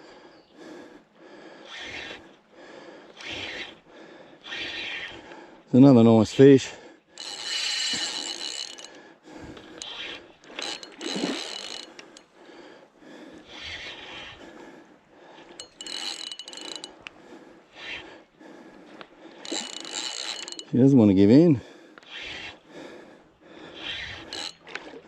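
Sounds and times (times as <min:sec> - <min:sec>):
fishing reel whirring and ratcheting: 0:03.2 - 0:03.8, 0:04.4 - 0:05.3, 0:07.1 - 0:12.3, 0:13.4 - 0:14.4, 0:15.4 - 0:17.1, 0:19.3 - 0:21.0, 0:22.0 - 0:22.6, 0:23.7 - 0:25.0.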